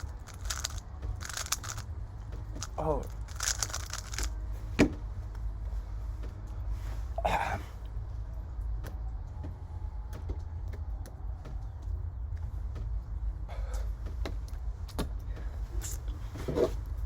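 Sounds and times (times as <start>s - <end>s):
puzzle cube clicks: 0.0s - 1.9s, 2.6s - 4.4s
low hum: 0.0s - 17.0s.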